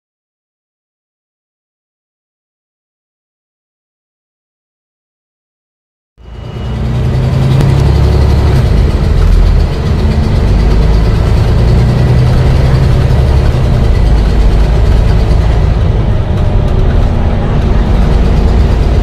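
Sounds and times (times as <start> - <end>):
bus diesel engine idling: 6.2 - 19.0.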